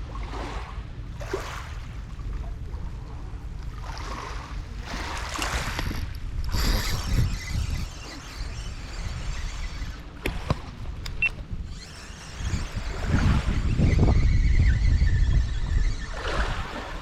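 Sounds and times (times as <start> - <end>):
faint steady whine: 0.0 - 17.0
wind buffeting microphone: 2.4 - 17.0
sharp clicks: 5.4 - 12.8.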